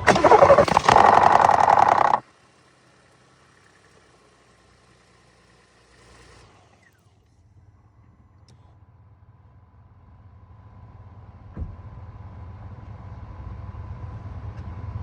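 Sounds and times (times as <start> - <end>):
truck engine rattling: 0.0 - 2.2.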